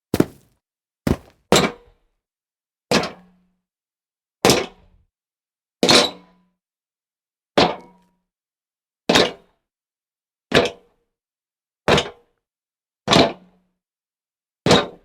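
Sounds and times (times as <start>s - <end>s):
jumping sound effect thuds: 0.2s - 0.5s, 1.1s - 1.4s.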